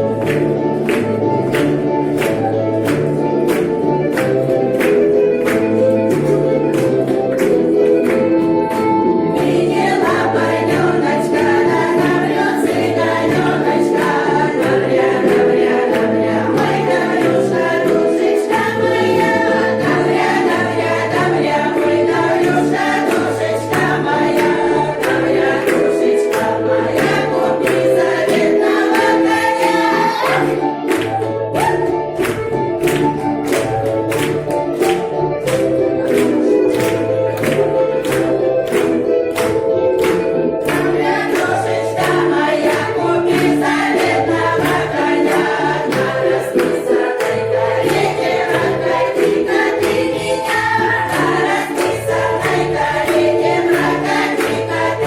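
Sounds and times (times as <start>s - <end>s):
instrumental accompaniment: 0.0s - 55.0s
women singing in chorus: 9.4s - 30.6s, 40.7s - 55.0s.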